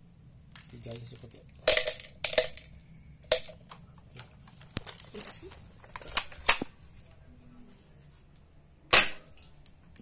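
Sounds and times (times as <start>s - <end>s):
sharp crack: 8.9s - 9.8s.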